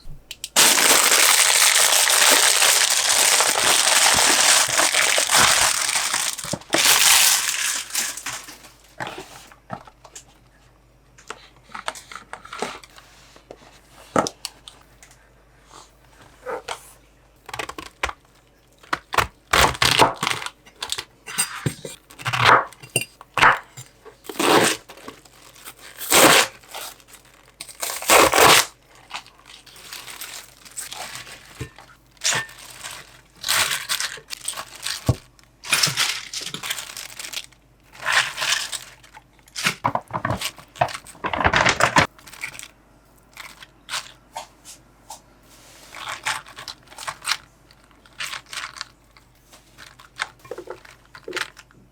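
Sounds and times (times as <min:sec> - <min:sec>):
packaging rustling and tearing: 0:00.6 - 0:09.5, 0:18.8 - 0:21.1, 0:24.2 - 0:42.7, 0:43.3 - 0:44.2, 0:45.7 - 0:51.8.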